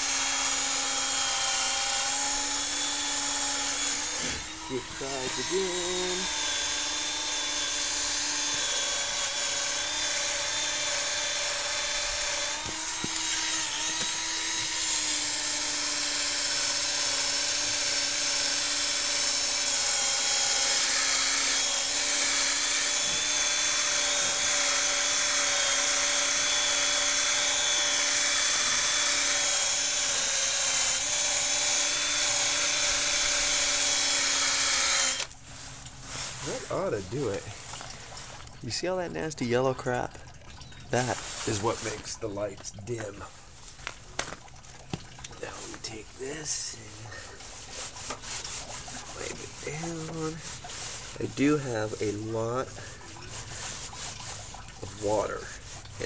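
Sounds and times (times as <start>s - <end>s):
cordless drill motor whine: 0.0s - 35.4s
foam ball rubbing on plastic: 45.4s - 56.0s.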